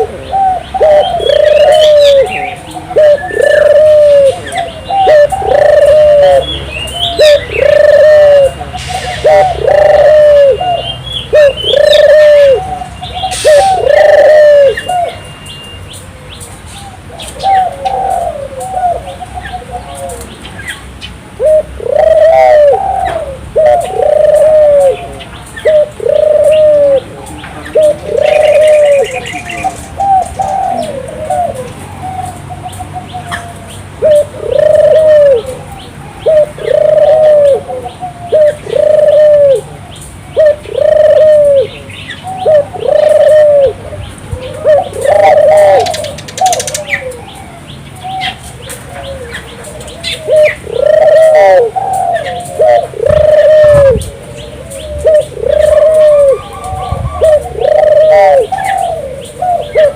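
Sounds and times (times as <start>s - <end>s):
dove cooing: 0.0s - 15.3s, 16.4s - 59.9s
small birds chirping: 0.0s - 22.2s, 22.8s - 59.9s.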